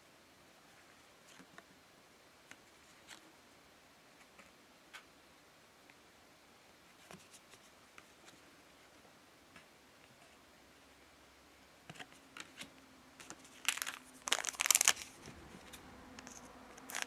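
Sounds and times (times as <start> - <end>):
cards being handled: 11.9 - 17.0.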